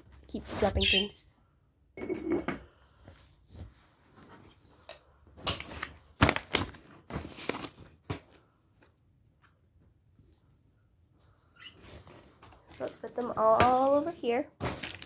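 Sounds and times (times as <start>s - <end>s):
plastic packaging crinkling: 5.4s - 8.0s, 12.6s - 15.0s
plastic toys knocking and clicking: 12.4s - 15.0s.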